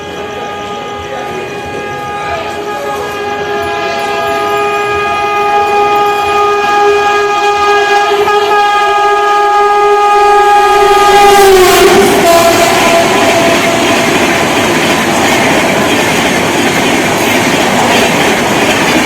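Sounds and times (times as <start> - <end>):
locomotive air horn blast: 0.0 - 14.6.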